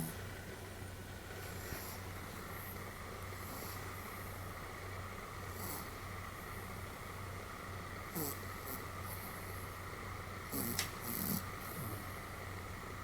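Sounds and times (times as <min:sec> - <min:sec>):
dog snoring: 0:00.0 - 0:00.2, 0:05.5 - 0:06.0, 0:08.1 - 0:09.4, 0:10.4 - 0:12.2
steady background hum: 0:00.0 - 0:13.0.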